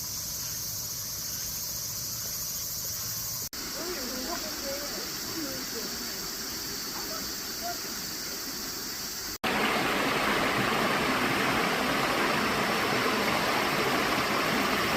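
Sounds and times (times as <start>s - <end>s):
stream rushing: 3.6s - 14.9s.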